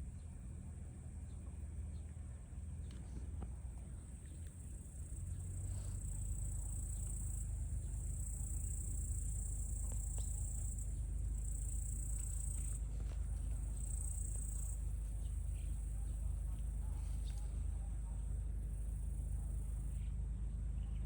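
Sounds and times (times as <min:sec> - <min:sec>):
low steady rumble: 0:00.0 - 0:21.0
insects singing: 0:04.6 - 0:20.0.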